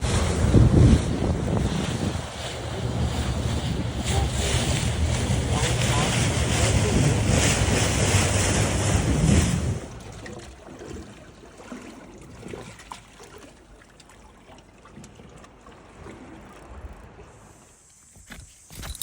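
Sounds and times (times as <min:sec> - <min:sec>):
wind buffeting microphone: 0:00.0 - 0:10.1
rushing water: 0:00.0 - 0:19.0
water lapping and trickling: 0:00.0 - 0:19.0.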